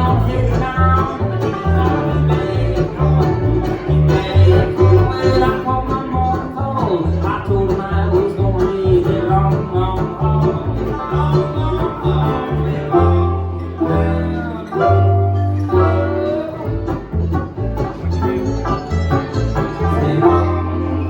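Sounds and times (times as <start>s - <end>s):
banjo: 0.0s - 21.0s
guitar: 0.0s - 21.0s
low bass line: 0.0s - 21.0s.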